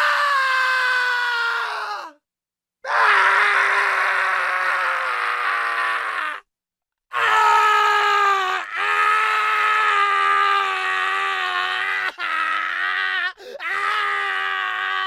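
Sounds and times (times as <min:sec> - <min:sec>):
man screaming: 0:02.9 - 0:06.4.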